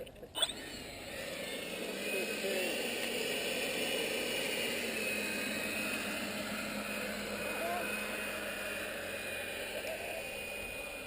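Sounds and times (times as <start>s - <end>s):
model jet fan whine: 0.3s - 11.0s.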